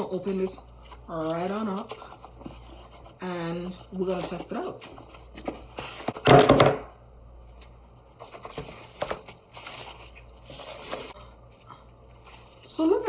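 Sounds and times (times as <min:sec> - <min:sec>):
packaging rustling: 0:07.6 - 0:13.0.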